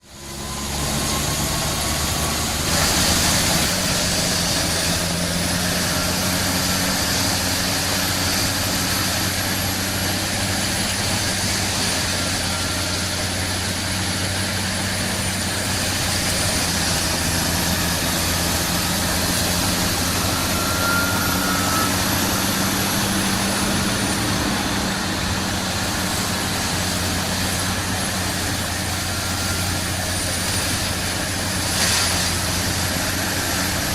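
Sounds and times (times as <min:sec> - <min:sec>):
forestry mulcher running: 0:00.0 - 0:33.9.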